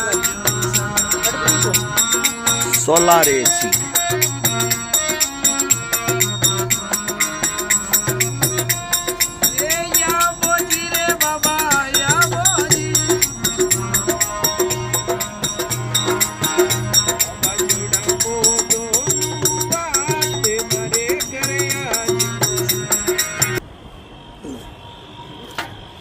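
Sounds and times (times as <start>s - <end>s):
bending folk melody line: 0.0s - 23.6s
shaker-like percussion: 0.0s - 23.6s.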